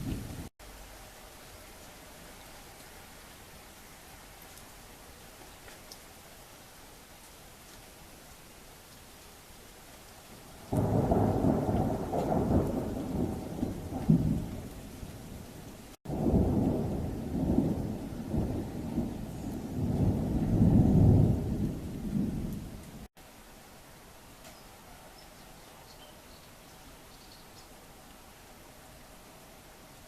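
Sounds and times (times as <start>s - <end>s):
thunder rumbling: 0.0s - 0.5s, 10.6s - 23.1s
light rain hiss: 0.0s - 30.0s.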